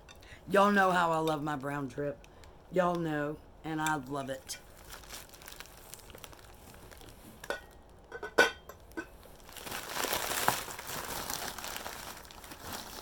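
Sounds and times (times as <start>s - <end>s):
packing paper crinkling: 4.6s - 8.1s, 8.8s - 13.0s
ceramic plate clinking: 7.5s - 9.1s.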